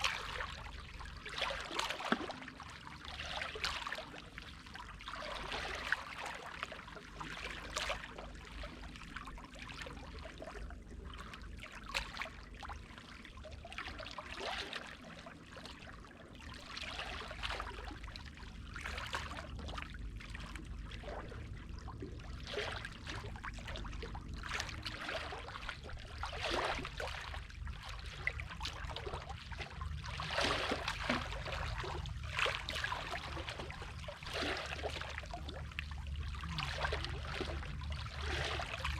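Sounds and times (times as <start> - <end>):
sea water lapping and splashing: 0.0 - 38.9
steady low rumble: 16.2 - 38.9.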